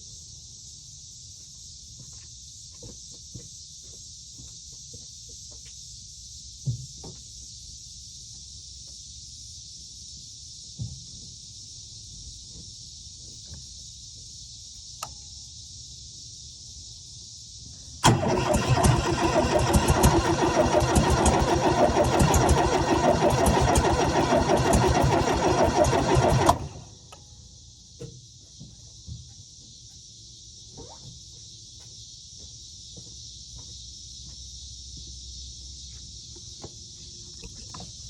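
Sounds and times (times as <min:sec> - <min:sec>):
faint click: 0:15.0 - 0:15.2
engine cranking by starter: 0:18.0 - 0:27.1.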